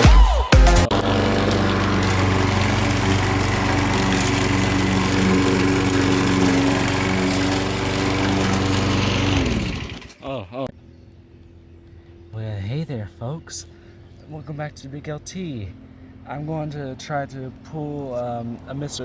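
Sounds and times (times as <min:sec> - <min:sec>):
engine winding down: 0:00.9 - 0:10.2
lawn mower engine running: 0:00.9 - 0:10.2.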